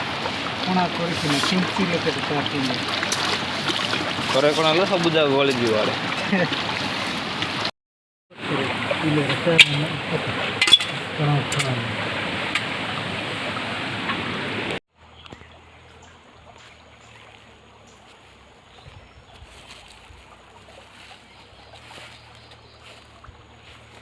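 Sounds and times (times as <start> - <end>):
faint water trickle: 0.0 - 7.1, 15.0 - 24.0
stream water rushing: 0.0 - 7.7, 8.3 - 24.0.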